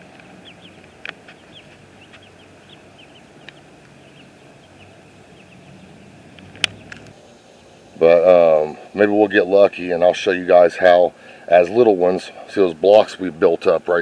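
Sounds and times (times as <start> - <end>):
chicks peeping: 0.0 - 8.0
sharp click: 6.4 - 7.2.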